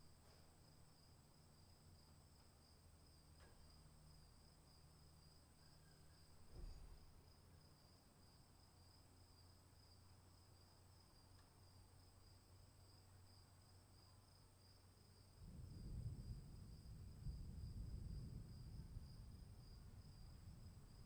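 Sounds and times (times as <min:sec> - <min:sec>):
insects chirring: 0:00.5 - 0:21.0
distant thunder rumble: 0:15.4 - 0:21.0.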